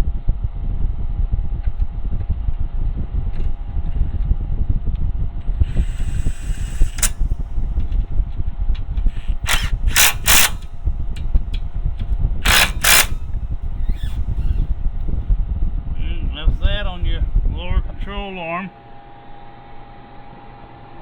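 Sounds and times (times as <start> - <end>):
steady low hum: 0.0 - 21.0
power tool bursts: 5.6 - 8.1, 8.8 - 15.2.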